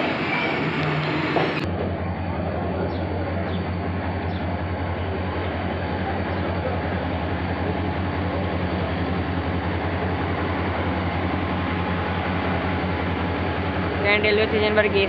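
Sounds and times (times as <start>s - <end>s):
locomotive engine idling: 0.0s - 15.0s.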